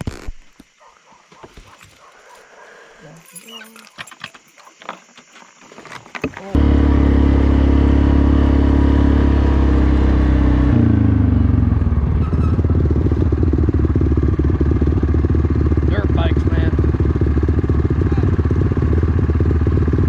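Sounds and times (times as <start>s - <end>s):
quad engine running: 6.5s - 20.0s.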